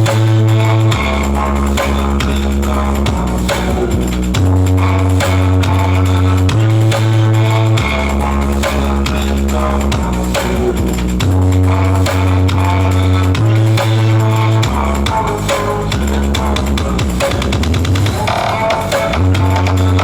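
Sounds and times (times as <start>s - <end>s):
electronic music with deep bass: 0.0s - 20.0s.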